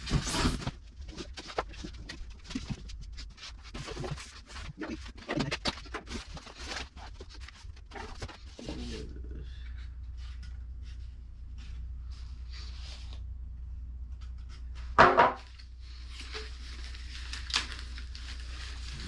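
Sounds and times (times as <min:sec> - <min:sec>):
cardboard and foam rustling: 0:00.0 - 0:09.2, 0:14.2 - 0:19.0.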